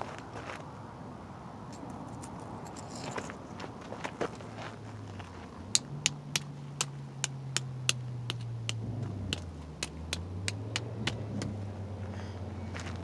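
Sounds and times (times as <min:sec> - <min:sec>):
vehicle engine running: 0:04.9 - 0:13.0.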